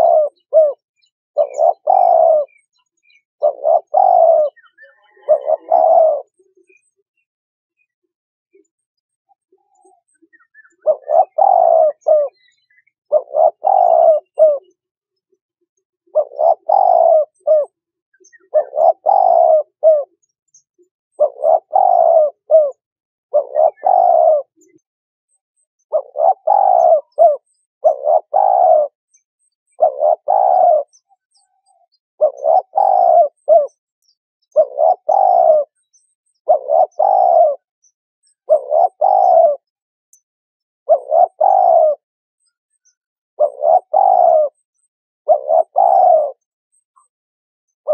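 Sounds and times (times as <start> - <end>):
dove cooing: 0.0 - 0.8, 1.4 - 2.6, 3.4 - 6.9, 9.5 - 14.8, 16.1 - 20.2, 21.2 - 24.8, 25.9 - 29.0, 29.6 - 33.8, 34.5 - 37.7, 38.3 - 39.8, 40.9 - 42.0, 43.4 - 47.1.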